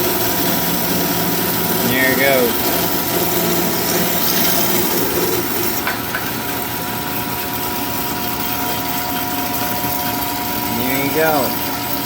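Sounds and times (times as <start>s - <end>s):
bandsaw motor whine: 0.0s - 12.0s
saw blade cutting metal: 3.4s - 5.9s.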